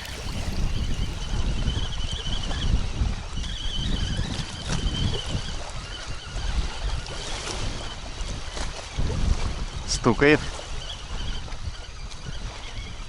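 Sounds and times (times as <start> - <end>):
gusty wind on microphone: 0.0 - 1.4
small waves lapping: 0.0 - 1.4.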